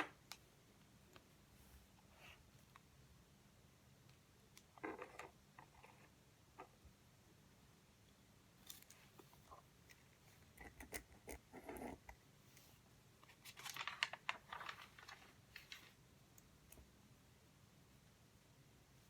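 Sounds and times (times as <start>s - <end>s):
small clicks and rustles: 12.6s - 16.9s.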